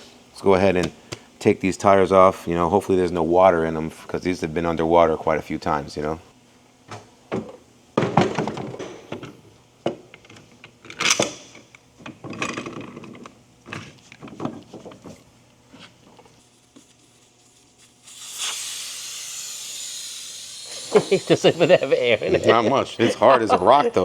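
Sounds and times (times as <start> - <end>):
air hissing from tire: 17.4 - 22.0.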